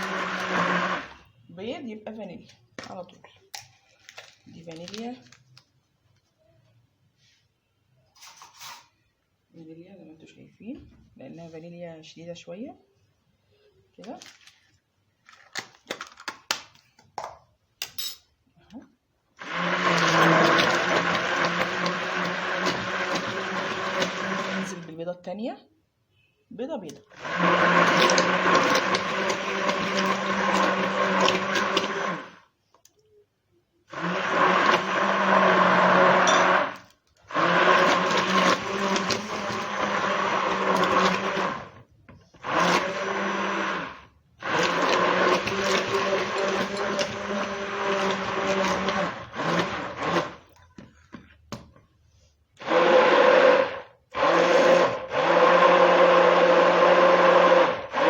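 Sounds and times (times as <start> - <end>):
handheld electric mixer running: 0.0 - 1.1, 19.4 - 24.8, 27.2 - 32.4, 33.9 - 41.8, 42.4 - 50.4, 52.6 - 58.0.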